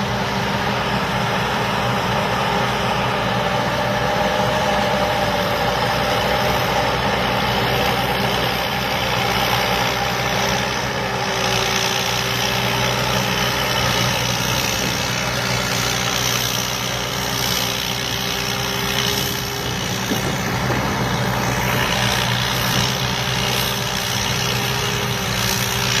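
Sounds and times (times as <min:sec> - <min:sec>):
combine harvester diesel engine: 0:00.0 - 0:26.0.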